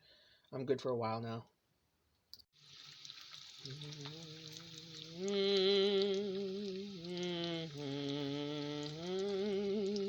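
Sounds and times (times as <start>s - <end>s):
person singing long held notes: 3.6s - 10.0s.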